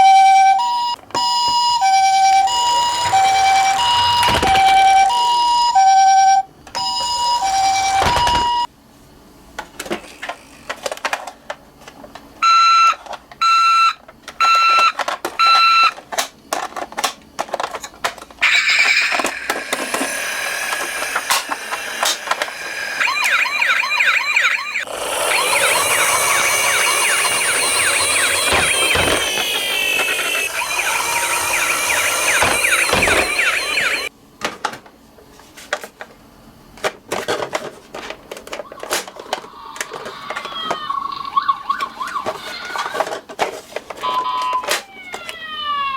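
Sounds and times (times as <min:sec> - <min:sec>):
toy electronic sirens: 0:00.0 - 0:08.7, 0:12.4 - 0:16.0, 0:18.4 - 0:34.1, 0:38.6 - 0:43.1, 0:44.0 - 0:45.9
short electronic beeps: 0:23.0 - 0:34.1.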